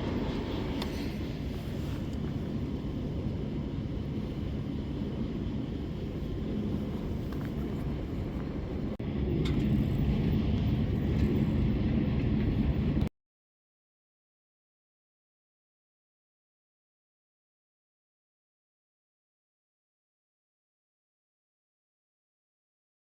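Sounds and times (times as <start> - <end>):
low outdoor rumble: 0.0 - 13.1.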